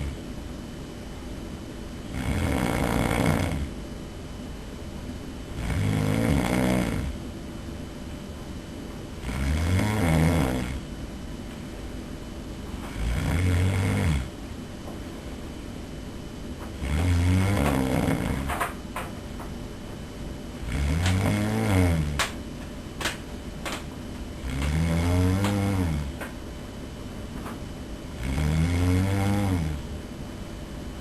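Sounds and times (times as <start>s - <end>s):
man snoring: 0.0s - 0.2s, 2.1s - 3.8s, 5.5s - 7.2s, 9.2s - 10.9s, 12.8s - 14.4s, 16.8s - 18.7s, 20.6s - 22.4s, 24.4s - 26.3s, 28.2s - 29.9s.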